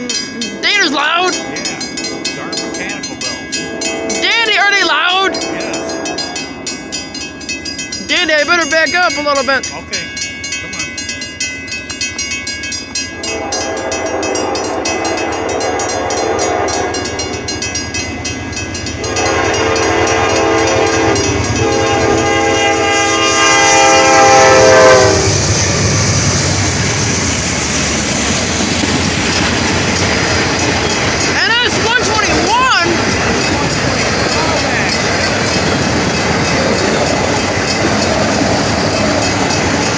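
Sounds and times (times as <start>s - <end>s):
railroad crossing bells ringing: 0.0s - 39.9s
train rumbling and clattering past: 0.0s - 39.9s
locomotive horn blasts: 2.0s - 6.4s, 13.2s - 17.5s, 18.9s - 25.6s.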